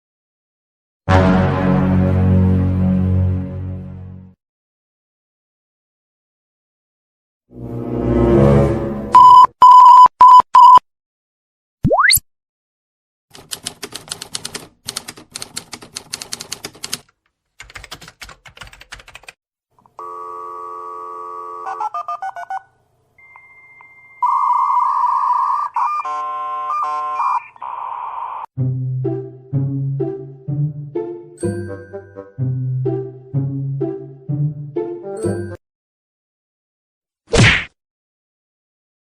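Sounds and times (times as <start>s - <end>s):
telephone tones and beeps: 9.2s - 10.8s, 20.0s - 28.5s.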